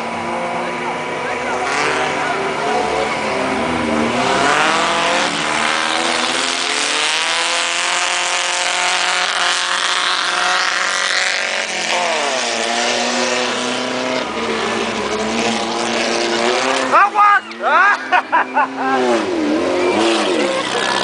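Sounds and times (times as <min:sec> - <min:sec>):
race car engine revving: 0:00.0 - 0:21.0.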